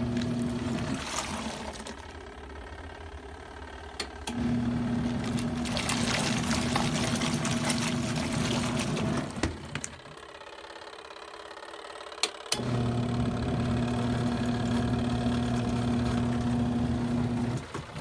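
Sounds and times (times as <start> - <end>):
washing machine motor hum: 0.0 - 18.0
water swishing and pouring: 0.3 - 2.1, 5.2 - 9.3.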